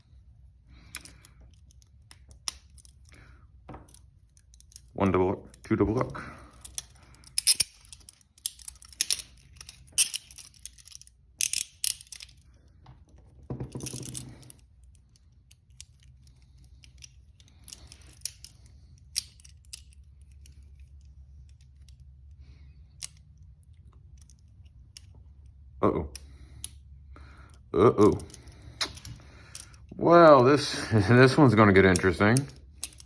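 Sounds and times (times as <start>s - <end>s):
metal handcuffs clicking and rattling: 0.7s - 12.8s, 13.7s - 33.0s.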